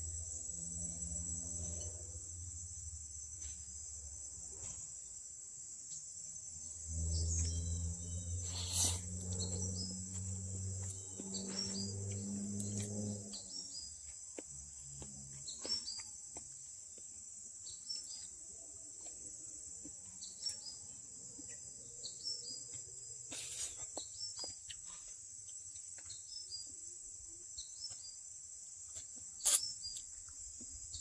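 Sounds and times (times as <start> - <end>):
high-pitched insect chorus: 0.0 - 31.0
low hum: 6.0 - 16.0.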